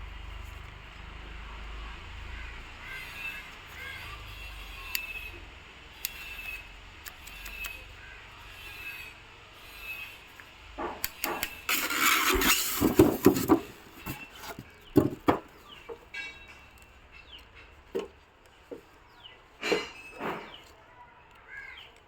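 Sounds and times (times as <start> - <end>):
packaging scraping and rustling: 11.2 - 15.2.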